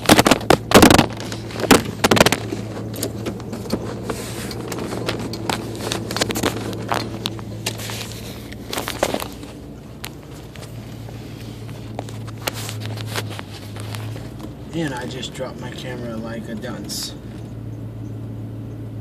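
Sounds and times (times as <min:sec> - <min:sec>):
truck engine idling: 0:00.0 - 0:19.0.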